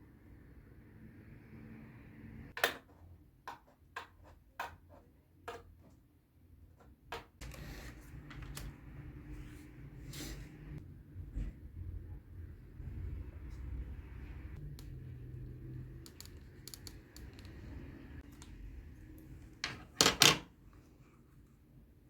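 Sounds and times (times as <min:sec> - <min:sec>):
light clicks and taps: 0:16.0 - 0:18.6.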